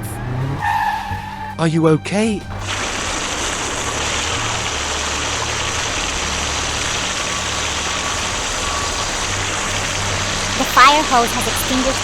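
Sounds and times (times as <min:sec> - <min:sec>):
engine running with hiss: 0:02.5 - 0:12.0.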